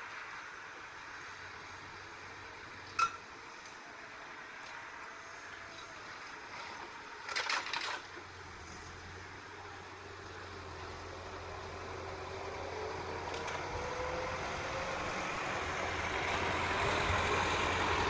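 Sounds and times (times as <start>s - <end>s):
heavy machinery engine running: 6.4s - 18.0s.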